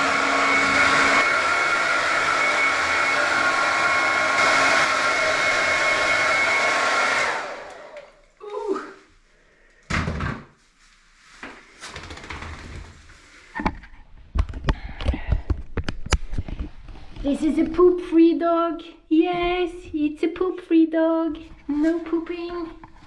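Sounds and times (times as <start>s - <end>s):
hair dryer blowing: 0.0s - 8.3s.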